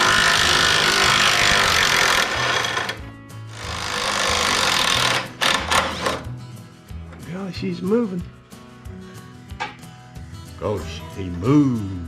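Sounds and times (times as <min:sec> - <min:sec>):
pneumatic tool rattling: 0:00.0 - 0:06.2.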